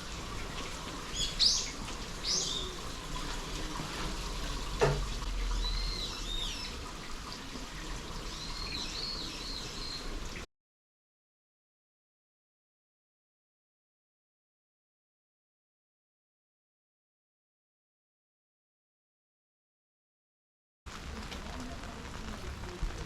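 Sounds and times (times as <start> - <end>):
water noise: 0.0 - 10.5, 20.9 - 23.0
small birds chirping: 0.3 - 10.4.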